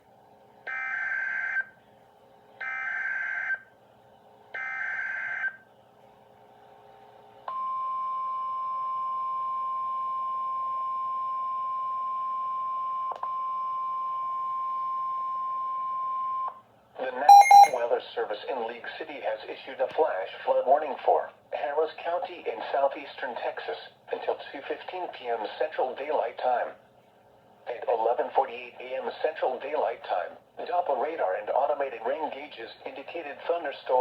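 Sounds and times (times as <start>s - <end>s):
steady single-pitch attention tone: 17.3s - 17.8s.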